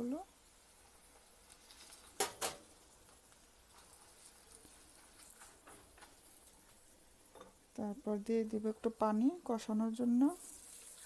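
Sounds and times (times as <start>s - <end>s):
utensil striking cooking pan: 0.8s - 7.7s.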